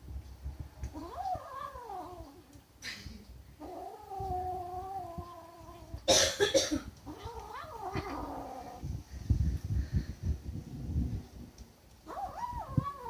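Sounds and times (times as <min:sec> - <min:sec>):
kitten growling yowl: 0:07.1 - 0:08.8, 0:12.1 - 0:13.0.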